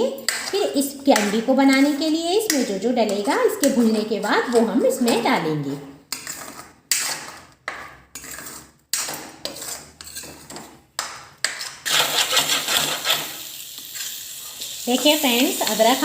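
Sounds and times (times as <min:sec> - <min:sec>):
utensil scraping a pan: 0:00.0 - 0:15.8
paste sizzling in oil: 0:11.8 - 0:16.0.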